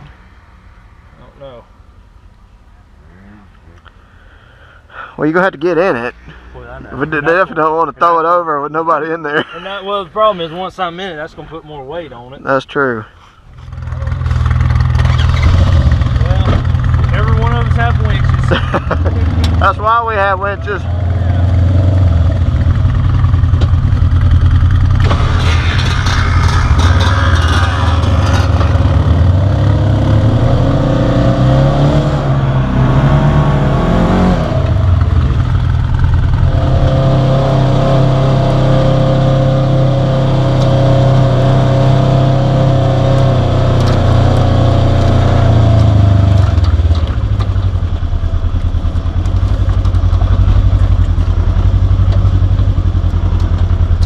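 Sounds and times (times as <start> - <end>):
rattling scraping noise: 13.5 - 17.6, 23.2 - 30.0
engine running and revving: 13.6 - 54.0.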